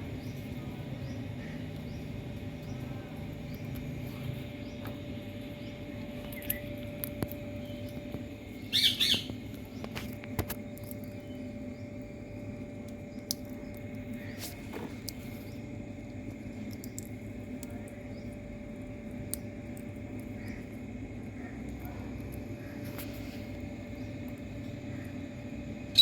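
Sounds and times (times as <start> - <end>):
faint steady hum: 0.0 - 26.0
faint chirps and clicks: 0.2 - 18.4
parrot calling: 8.7 - 9.4.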